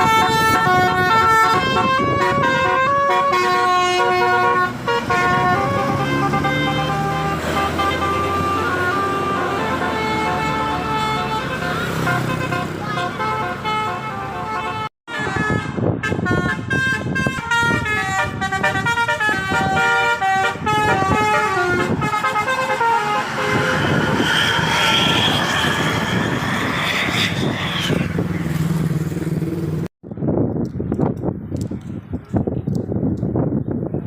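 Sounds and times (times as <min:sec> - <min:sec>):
bus musical horn playing tune: 0:00.0 - 0:26.4.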